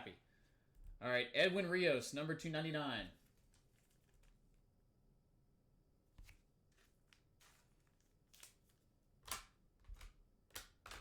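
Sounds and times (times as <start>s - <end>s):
trading cards rustling: 6.2s - 11.0s.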